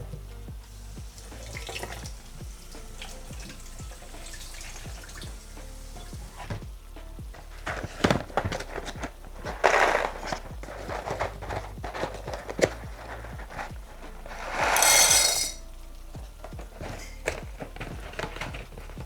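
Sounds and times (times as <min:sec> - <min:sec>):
pans and utensils knocking: 0:07.6 - 0:15.6, 0:16.2 - 0:19.0.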